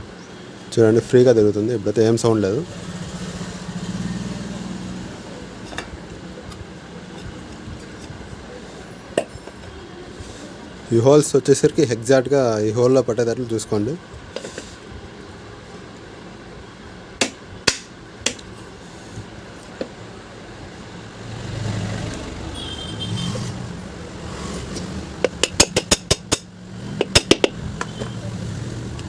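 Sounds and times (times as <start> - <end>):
steady low hum: 0.0 - 21.4.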